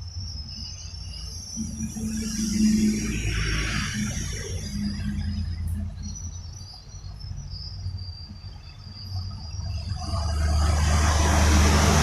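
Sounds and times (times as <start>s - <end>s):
insects chirping: 0.0s - 12.0s
vehicle engine hum: 0.0s - 12.0s
tyre hiss on wet road: 10.1s - 12.0s.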